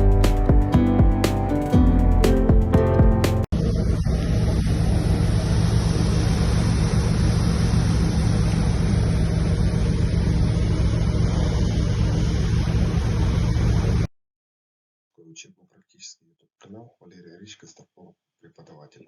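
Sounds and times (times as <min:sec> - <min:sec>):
music: 0:00.0 - 0:03.5
ship engine drone: 0:03.5 - 0:14.1.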